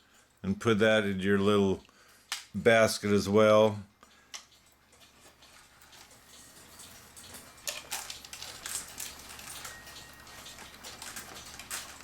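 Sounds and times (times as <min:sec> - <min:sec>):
metal chain clicking and rattling: 0:04.4 - 0:12.0.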